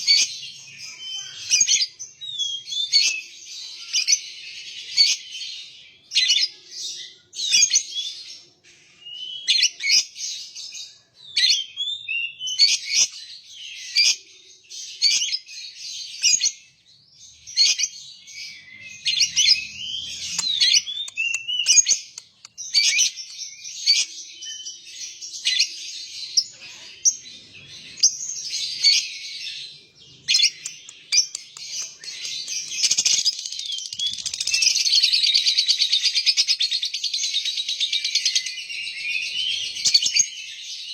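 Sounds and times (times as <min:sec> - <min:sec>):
lovebird chattering song: 0:17.6 - 0:24.1, 0:26.4 - 0:40.3.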